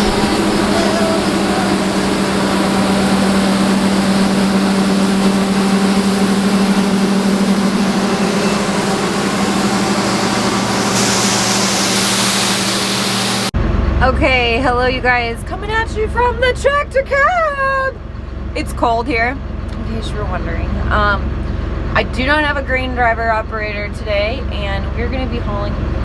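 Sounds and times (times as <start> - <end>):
diesel engine idling: 0.0 - 26.0
hiss: 8.4 - 13.5.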